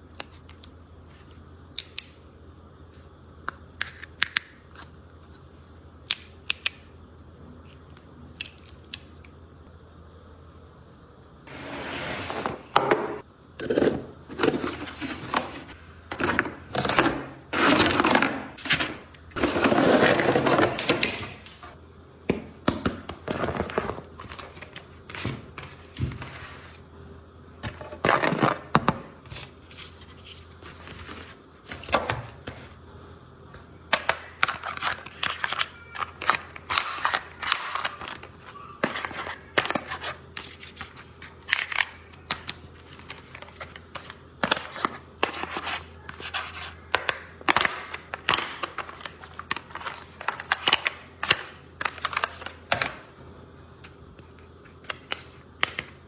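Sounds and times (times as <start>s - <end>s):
toy packaging handling noises: 34.0s - 52.9s.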